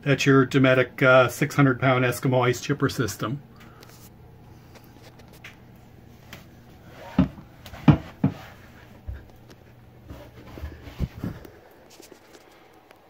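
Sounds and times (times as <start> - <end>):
steady low hum: 0.0 - 13.0
dull knocks and thumps: 7.1 - 9.3.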